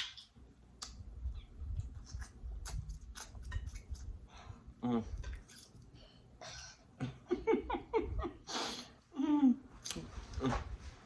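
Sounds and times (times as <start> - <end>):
woman laughing: 7.0 - 8.5.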